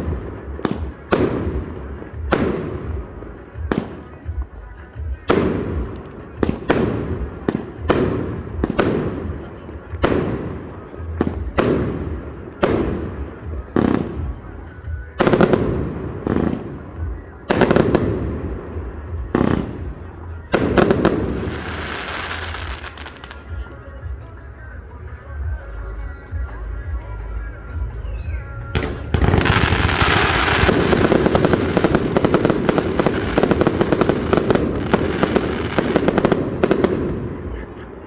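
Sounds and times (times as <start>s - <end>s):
crackling firework salvo: 0.0s - 4.5s, 5.1s - 23.6s, 28.8s - 38.0s
firework shells bursting: 29.2s - 37.3s.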